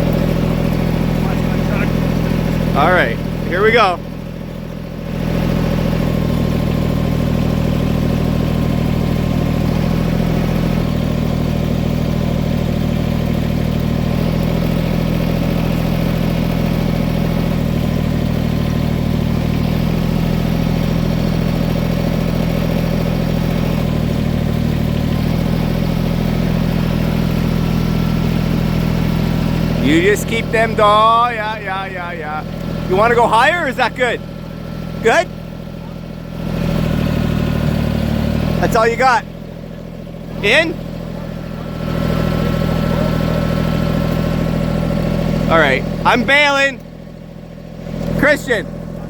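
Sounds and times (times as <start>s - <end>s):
engine running: 0.0s - 49.0s.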